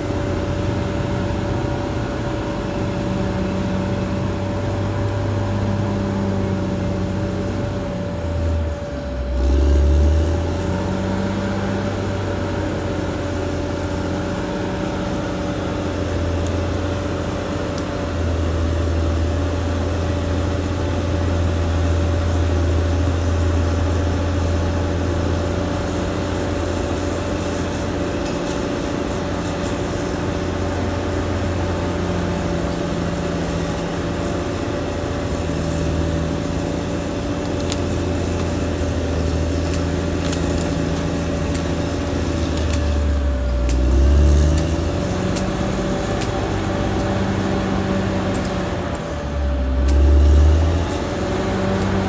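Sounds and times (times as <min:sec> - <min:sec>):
bulldozer diesel engine running: 0:00.0 - 0:52.0
engine whine: 0:00.0 - 0:52.0.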